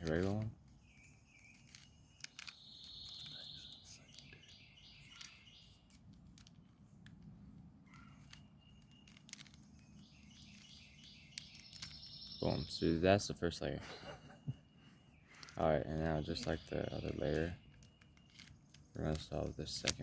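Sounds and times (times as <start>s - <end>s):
plastic puzzle cube clicking: 0.0s - 7.3s, 7.9s - 12.1s, 16.4s - 20.0s
faint high chirping: 0.8s - 6.0s, 7.8s - 19.9s.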